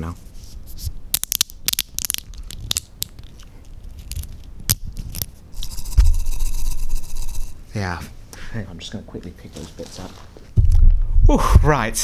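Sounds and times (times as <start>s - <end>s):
dry spaghetti snapping: 1.1s - 5.3s.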